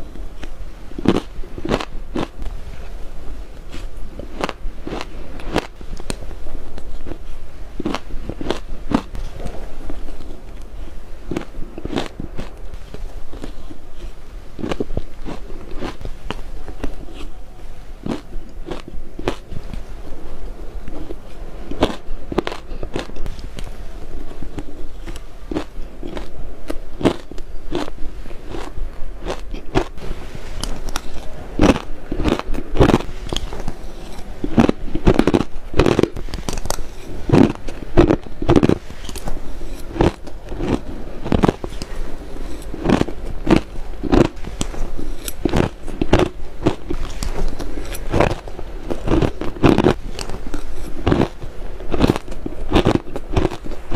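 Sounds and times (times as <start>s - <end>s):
ice crunching between teeth: 1.0s - 2.4s, 13.3s - 17.3s, 21.0s - 23.6s, 24.4s - 30.0s, 30.6s - 53.8s.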